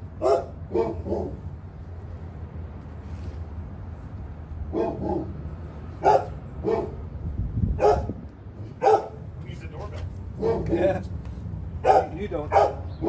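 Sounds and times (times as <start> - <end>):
dog barking: 0.2 - 1.4, 4.7 - 5.4, 6.0 - 7.0, 7.8 - 8.2, 8.8 - 9.2, 10.4 - 10.9, 11.8 - 13.0.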